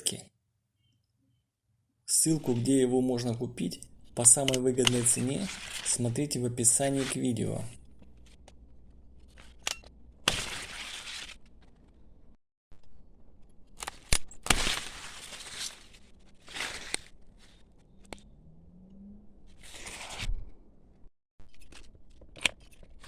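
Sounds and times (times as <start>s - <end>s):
shears clicking: 4.0s - 6.0s
pruning shears crunching branches: 4.0s - 11.9s, 13.7s - 17.6s.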